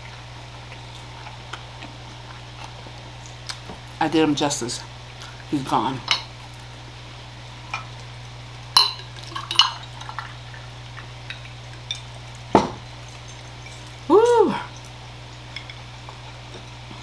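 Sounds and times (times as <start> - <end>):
dishes and cutlery clinking: 8.8 - 9.8.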